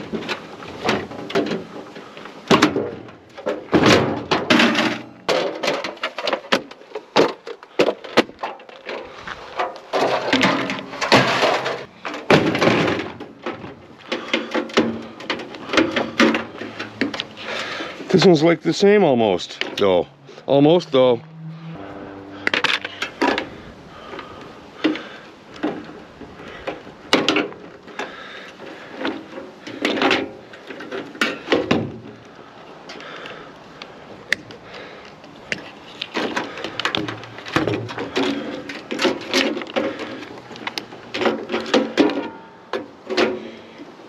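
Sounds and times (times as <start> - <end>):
metal knocks and clatters: 0.0 - 17.8
metal scraping: 14.2 - 24.6.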